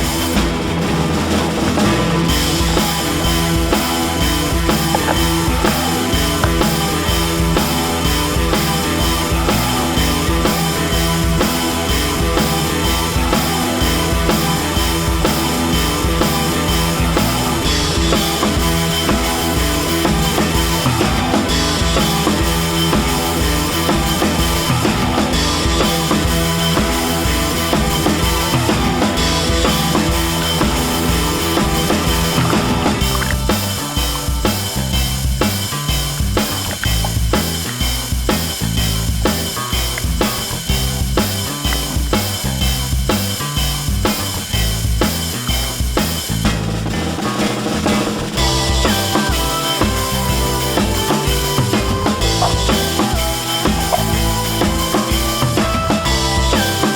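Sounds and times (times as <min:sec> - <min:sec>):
rock music with drum beat: 0:00.0 - 0:56.9.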